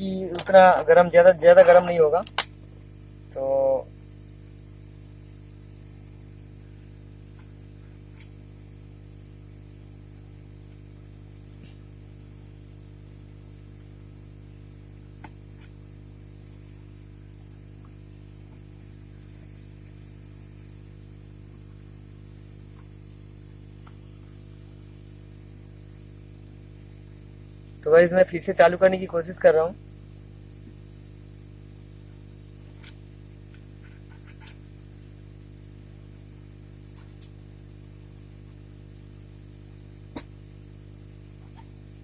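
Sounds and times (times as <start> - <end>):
background hiss: 0.0 - 42.0
electrical hum: 0.0 - 42.0.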